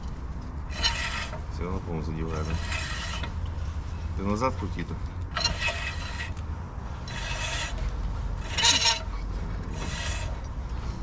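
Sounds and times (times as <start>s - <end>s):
brake disc scraping squeal: 0.7s - 1.5s, 2.2s - 3.4s, 5.3s - 6.4s, 7.0s - 10.5s.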